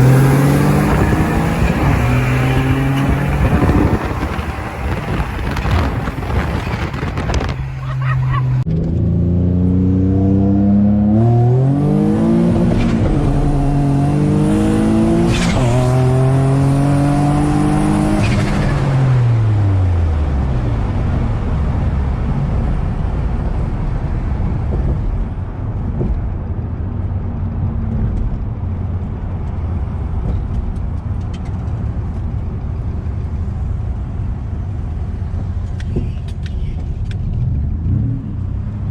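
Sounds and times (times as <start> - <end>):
car engine revving under full throttle: 0.0 - 25.1, 37.2 - 38.9
road and wind noise: 0.0 - 38.9.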